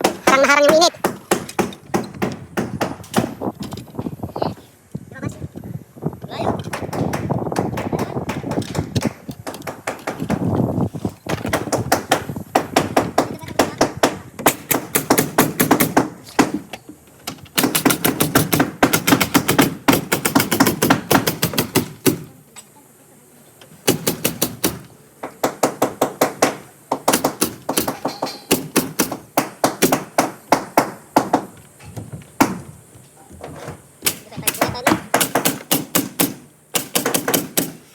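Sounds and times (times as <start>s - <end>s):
nail gun firing: 0.0s - 3.4s, 6.6s - 10.5s, 11.3s - 16.7s, 17.3s - 22.3s, 23.8s - 31.6s, 32.4s - 32.6s, 34.0s - 37.9s.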